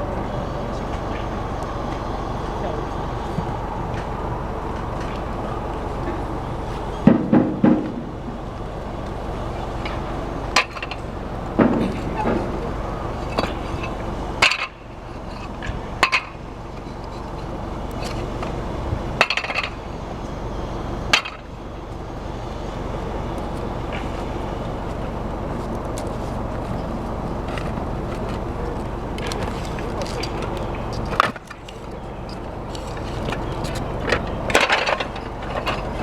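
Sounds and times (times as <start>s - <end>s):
steady low hum: 0.0s - 36.0s
clay roof tiles clinking: 9.6s - 18.6s, 19.2s - 19.9s, 23.1s - 36.0s.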